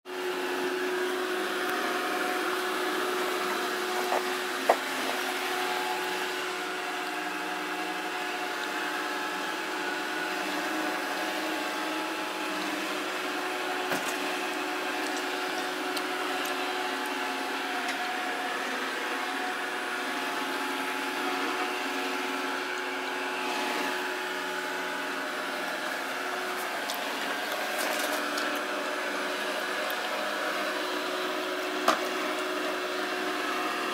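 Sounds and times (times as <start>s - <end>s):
robot vacuum running: 1.6s - 8.9s.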